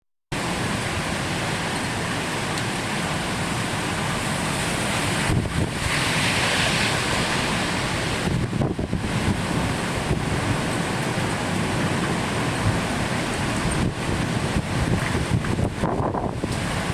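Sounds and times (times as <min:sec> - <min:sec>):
heavy rain: 0:00.4 - 0:16.9
typhoon wind: 0:00.4 - 0:16.9
wind buffeting microphone: 0:04.8 - 0:16.9.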